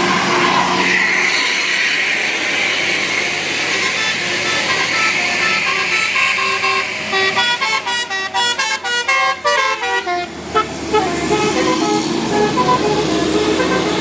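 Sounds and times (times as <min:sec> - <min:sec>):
vehicle noise: 0:00.0 - 0:14.0
multi-tone musical bus horn: 0:03.5 - 0:14.0.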